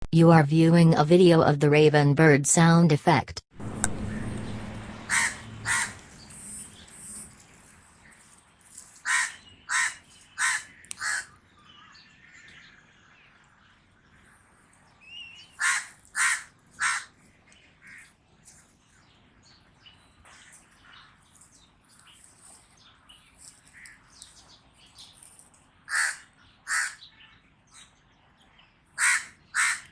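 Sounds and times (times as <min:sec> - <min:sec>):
raven cawing: 0:04.0 - 0:06.4, 0:09.0 - 0:11.4, 0:15.6 - 0:17.2, 0:25.9 - 0:27.0, 0:29.0 - 0:29.9.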